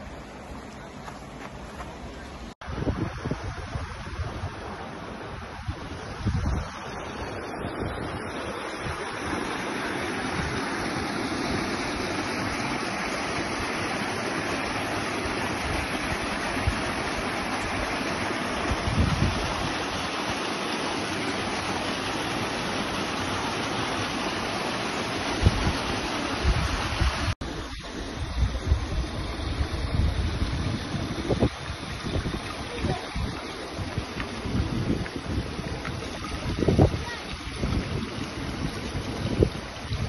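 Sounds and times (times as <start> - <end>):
wind buffeting microphone: 2.3 - 9.6, 18.6 - 19.8, 25.3 - 40.0
waterfall rushing: 4.2 - 40.0.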